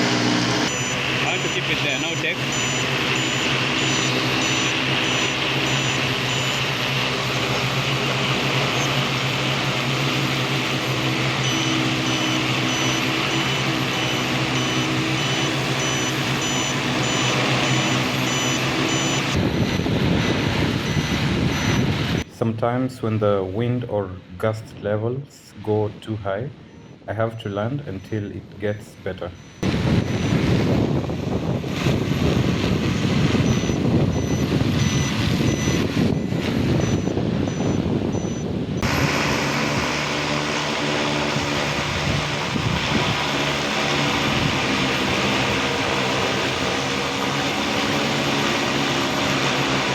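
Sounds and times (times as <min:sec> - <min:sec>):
high electronic beeps: 0:00.0 - 0:08.0, 0:08.6 - 0:09.2, 0:10.2 - 0:22.3, 0:26.7 - 0:30.8, 0:32.8 - 0:39.2
motor humming: 0:00.0 - 0:22.3, 0:29.4 - 0:49.9
drone rotors rumbling: 0:00.0 - 0:24.9, 0:25.5 - 0:49.9
rough gusty low rumble: 0:19.3 - 0:23.2, 0:29.3 - 0:48.1.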